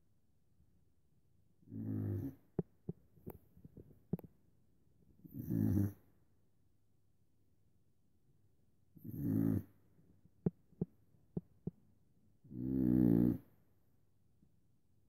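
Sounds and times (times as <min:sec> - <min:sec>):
person snoring: 0:01.7 - 0:02.4, 0:05.4 - 0:06.0, 0:09.0 - 0:09.7, 0:12.5 - 0:13.5.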